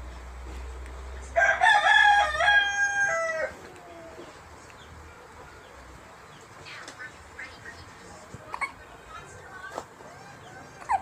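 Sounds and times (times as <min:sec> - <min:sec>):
rooster crowing: 0:01.4 - 0:03.6.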